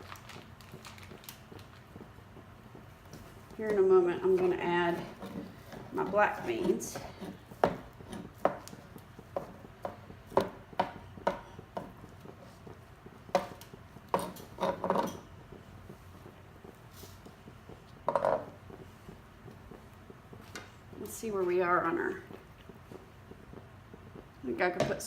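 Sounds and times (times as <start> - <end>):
utensil knocking against a pan: 18.1 - 18.5.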